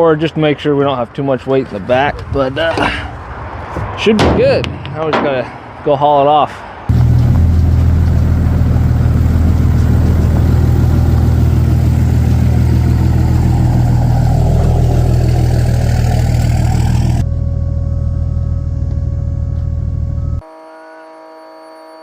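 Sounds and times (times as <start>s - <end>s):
vehicle engine droning: 6.9s - 20.4s.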